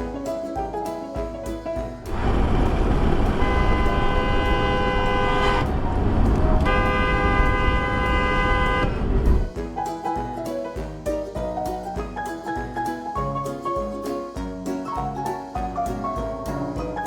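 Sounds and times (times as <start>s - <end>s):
low road rumble: 2.0s - 9.6s
car horn blasts: 2.2s - 9.5s.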